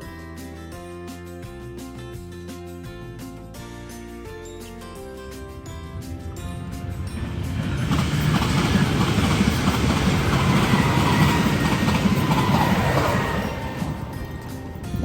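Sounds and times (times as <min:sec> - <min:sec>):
loud dense rumbling: 0:05.4 - 0:15.0.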